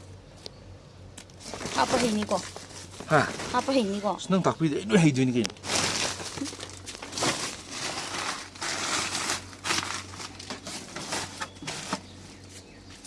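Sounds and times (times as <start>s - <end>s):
material rustling and crinkling: 1.4s - 4.2s, 5.4s - 12.6s.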